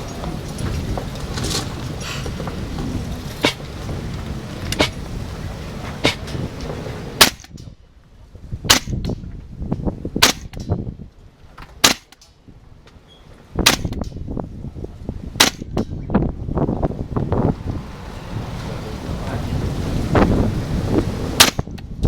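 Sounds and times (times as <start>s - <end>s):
wind buffeting microphone: 0.0s - 22.0s
airsoft rifle shots: 7.2s - 7.7s, 8.7s - 9.2s, 10.2s - 10.8s, 11.8s - 12.3s, 13.6s - 14.1s, 15.4s - 15.8s, 21.4s - 21.8s.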